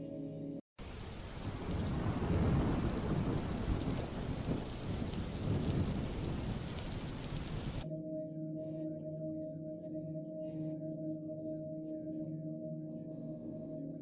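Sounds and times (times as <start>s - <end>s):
rain falling steadily: 0.8s - 7.8s
thunder rumbling: 0.8s - 7.8s.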